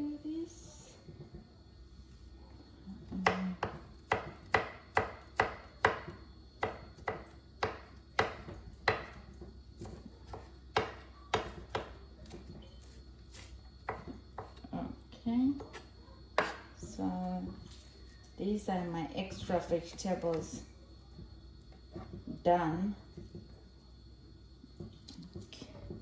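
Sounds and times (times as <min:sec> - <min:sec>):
knife chopping on cutting board: 0:03.2 - 0:09.2, 0:09.8 - 0:12.4, 0:13.3 - 0:14.6, 0:16.4 - 0:16.7.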